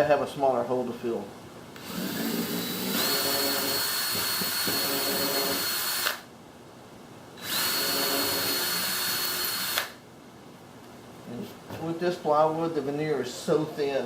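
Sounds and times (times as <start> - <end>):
power drill whining: 1.8 - 6.2, 7.4 - 10.0.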